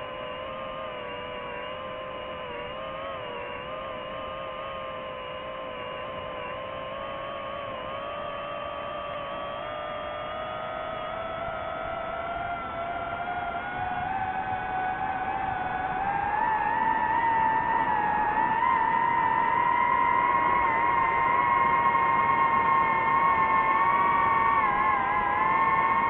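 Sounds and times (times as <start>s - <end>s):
drone propellers whining: 5.2s - 26.0s.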